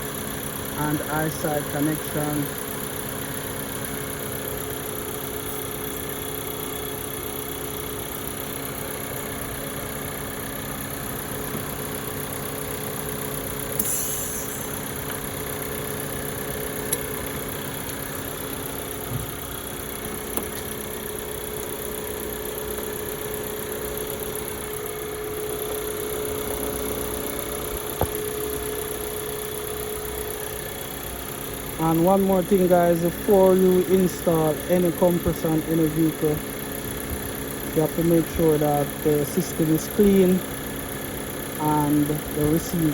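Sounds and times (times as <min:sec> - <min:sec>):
car engine idling: 0:00.0 - 0:42.9
brief hiss: 0:13.8 - 0:14.7.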